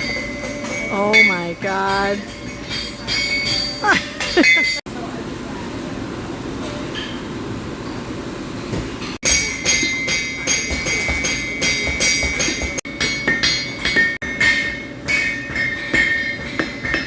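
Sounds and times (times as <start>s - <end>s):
hammer striking steel on anvil: 0.0s - 4.8s, 9.2s - 17.0s.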